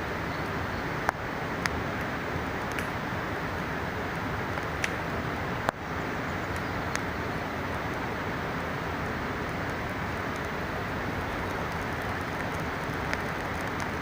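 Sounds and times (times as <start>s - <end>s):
mountain river rushing: 0.0s - 14.0s
campfire pops: 1.0s - 3.0s, 4.5s - 5.9s, 6.5s - 7.1s, 11.4s - 14.0s.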